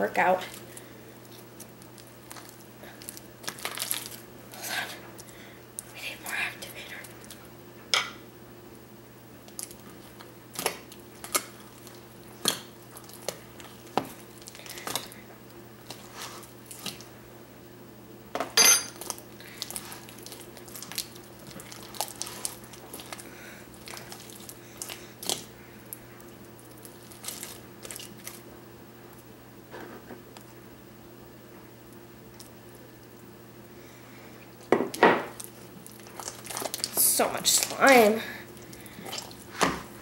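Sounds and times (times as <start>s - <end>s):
thick slime being mixed: 0.1s - 5.2s, 9.4s - 17.2s, 19.0s - 28.5s, 35.3s - 40.0s.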